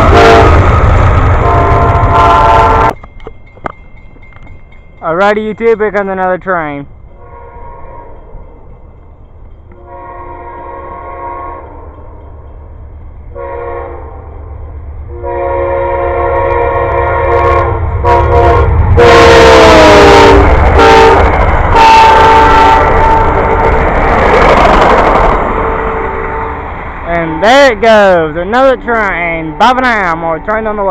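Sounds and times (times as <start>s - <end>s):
locomotive air horn blasts: 0.0s - 0.7s, 1.4s - 3.0s, 7.2s - 8.2s, 9.8s - 11.9s, 13.3s - 14.4s, 15.1s - 23.6s, 25.5s - 26.7s
rumble of passing train: 0.0s - 30.9s.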